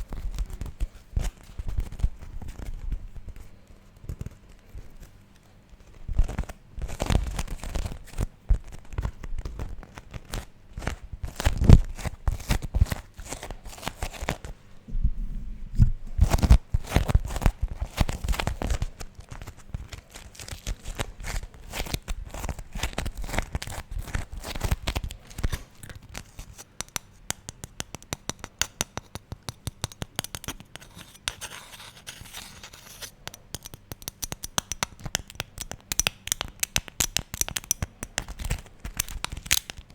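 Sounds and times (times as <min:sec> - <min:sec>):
beeswax wrap crinkling and tearing: 0:16.2 - 0:26.6.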